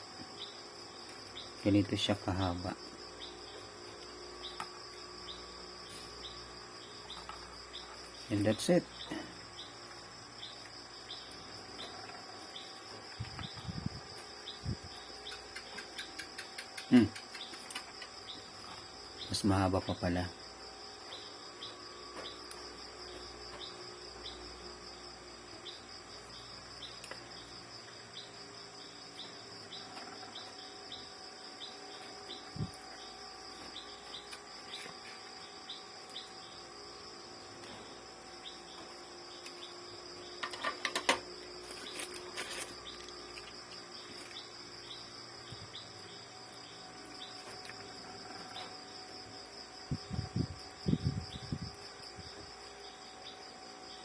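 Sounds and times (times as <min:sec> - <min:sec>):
insects chirring: 0:00.0 - 0:54.0
small clicks and taps: 0:15.3 - 0:18.0.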